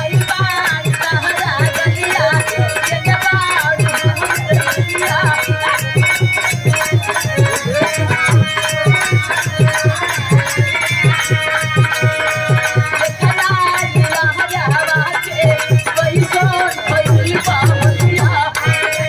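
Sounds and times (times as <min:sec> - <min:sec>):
winding melody line: 0:02.7 - 0:12.5.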